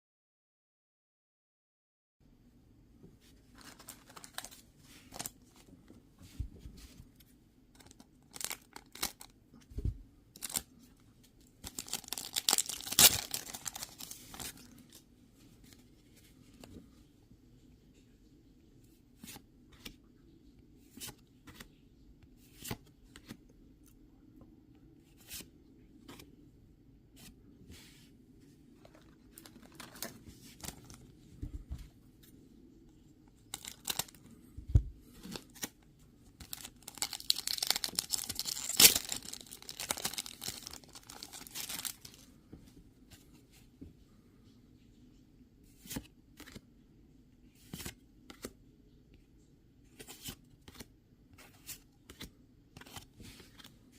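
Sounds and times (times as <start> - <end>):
foil wrapper crinkling and tearing: 11.6 - 14.7, 33.5 - 34.2, 36.4 - 42.2.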